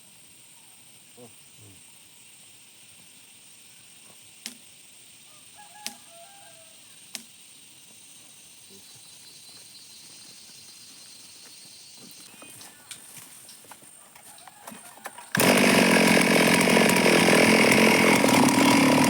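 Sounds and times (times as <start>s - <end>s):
steady high hiss: 0.0s - 10.1s
sharp clicks: 7.1s - 7.3s.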